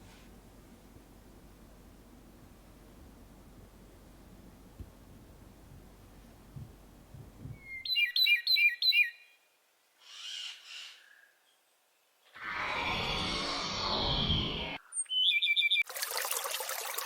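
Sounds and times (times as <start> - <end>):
bird chirping: 7.6 - 9.4, 14.4 - 15.9.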